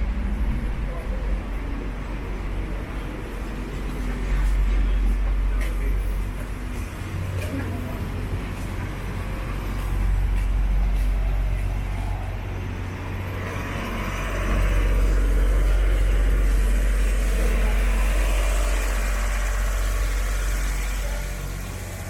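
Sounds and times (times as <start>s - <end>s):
vehicles passing close by: 0.0s - 22.0s.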